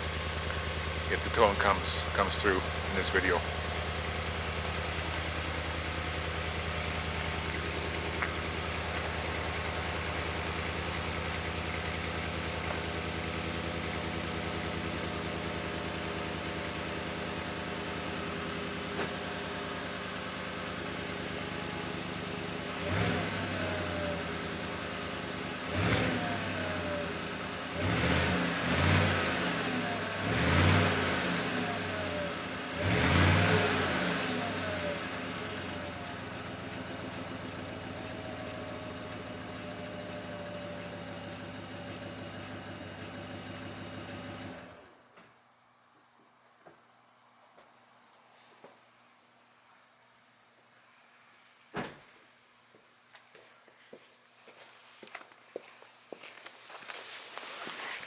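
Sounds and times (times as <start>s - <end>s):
engine idling and revving: 0.0s - 45.0s.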